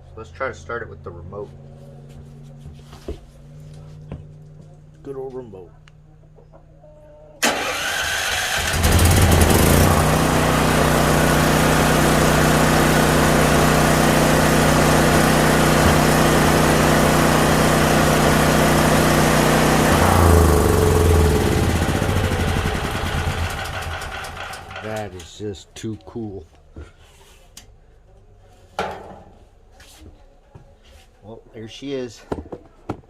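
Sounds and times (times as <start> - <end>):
electric starter cranking: 7.4 - 25.3
generator engine running: 7.4 - 25.3.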